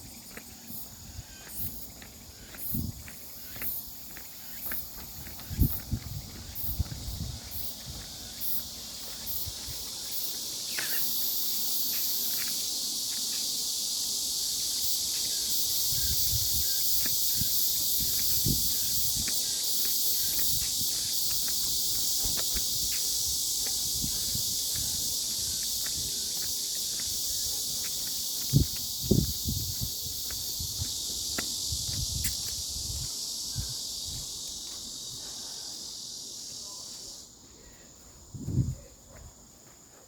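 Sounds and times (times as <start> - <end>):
high-pitched insect chorus: 0.0 - 40.0
soft footsteps: 17.0 - 33.2.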